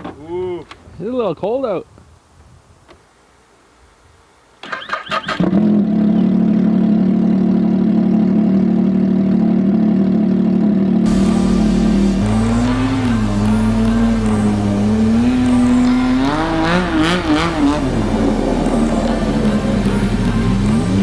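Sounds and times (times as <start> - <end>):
engine revving: 11.1 - 21.0
snowmobile engine idling: 11.1 - 21.0.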